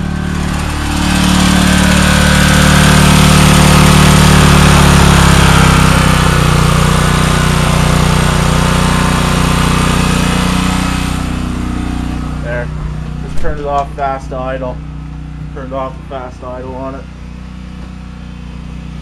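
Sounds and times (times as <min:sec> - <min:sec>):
generator engine running: 0:00.0 - 0:19.0.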